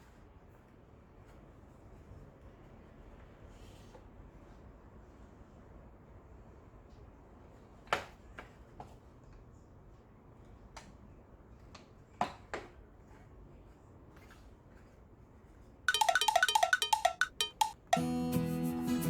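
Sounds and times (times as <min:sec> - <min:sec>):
bell-like chiming notes: 0:15.9 - 0:18.2
acoustic guitar music: 0:17.6 - 0:19.0.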